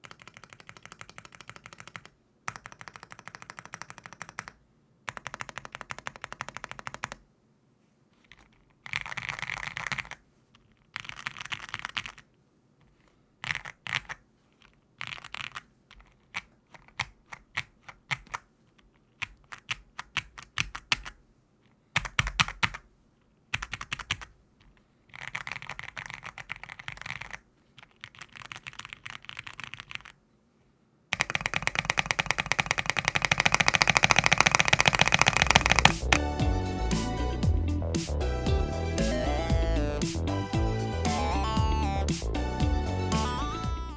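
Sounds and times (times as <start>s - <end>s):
mechanical keyboard typing: 0.0s - 7.2s, 8.3s - 10.2s, 11.0s - 12.2s, 13.4s - 14.2s, 15.0s - 15.6s, 19.2s - 21.2s, 22.0s - 22.8s, 23.5s - 24.3s, 25.1s - 30.2s, 31.2s - 36.3s
rapid spacebar presses: 31.2s - 36.2s.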